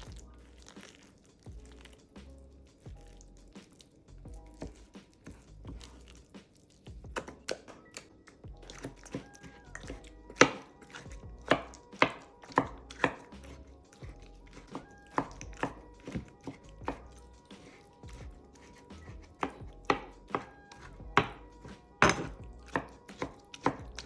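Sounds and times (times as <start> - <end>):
soft background music: 0.0 - 24.0
knife chopping on cutting board: 7.1 - 7.8, 8.6 - 13.7, 14.5 - 24.0.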